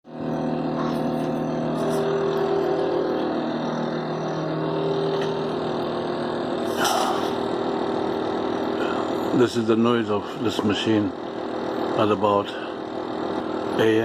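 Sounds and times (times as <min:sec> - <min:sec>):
machine droning hum: 0:00.0 - 0:14.0.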